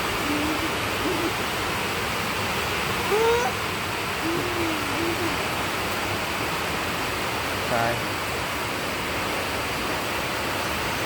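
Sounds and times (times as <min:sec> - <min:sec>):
hoot-like calls: 0:00.0 - 0:01.4, 0:03.0 - 0:05.5
heavy rain: 0:00.0 - 0:11.0.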